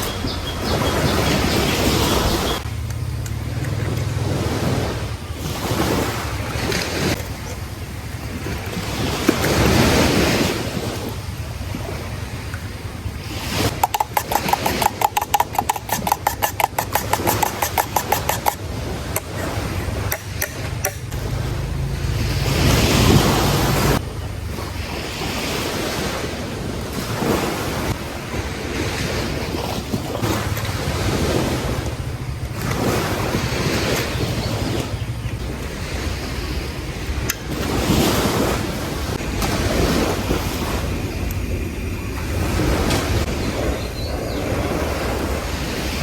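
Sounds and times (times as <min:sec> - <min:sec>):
waves washing onto beach: 0:00.0 - 0:46.0
wind on microphone: 0:00.0 - 0:46.0
rapid even clicking: 0:13.7 - 0:19.3.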